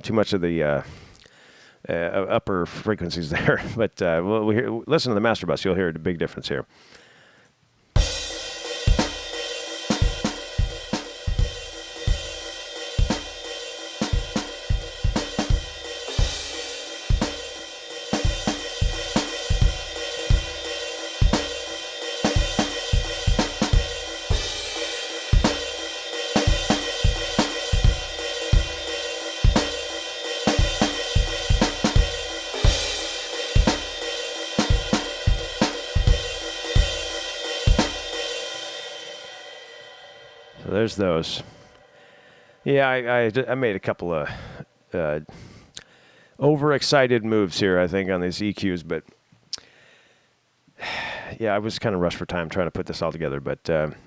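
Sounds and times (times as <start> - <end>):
drum kit playing a steady beat: 8.0 - 41.9
hi-hat and cymbals: 8.0 - 42.0.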